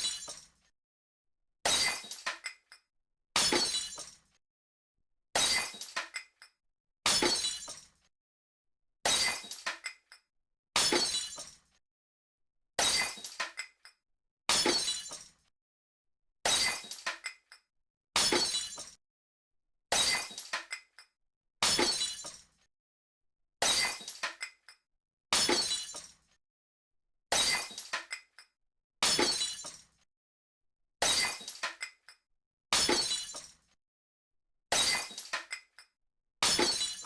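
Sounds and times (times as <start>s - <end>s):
glass smashing: 0.0s - 0.4s, 1.7s - 2.3s, 3.4s - 4.2s, 5.4s - 6.0s, 7.1s - 7.8s, 9.1s - 9.7s, 10.8s - 11.6s, 12.8s - 13.4s, 14.5s - 15.3s, 16.5s - 17.1s, 18.2s - 19.0s, 19.9s - 20.6s, 21.6s - 22.4s, 23.6s - 24.4s, 25.4s - 26.1s, 27.3s - 28.2s, 29.0s - 29.8s, 31.0s - 31.9s, 32.8s - 33.5s, 34.7s - 35.6s, 36.4s - 37.0s.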